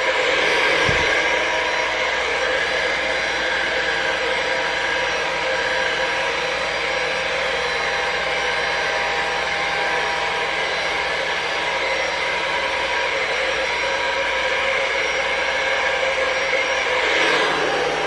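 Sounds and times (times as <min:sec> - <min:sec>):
hair dryer running: 0:00.0 - 0:18.0.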